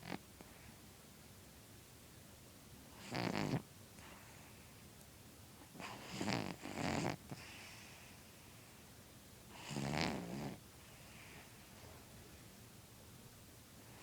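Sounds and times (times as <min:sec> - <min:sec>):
cat snoring: 0:00.0 - 0:00.2, 0:03.0 - 0:04.3, 0:05.8 - 0:08.0, 0:09.5 - 0:11.4.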